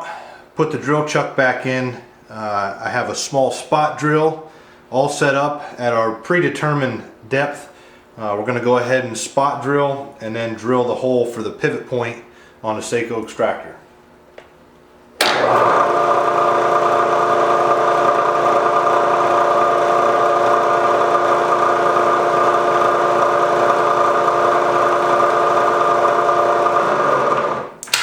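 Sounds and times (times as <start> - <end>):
milling machine spindle humming: 15.2 - 27.8.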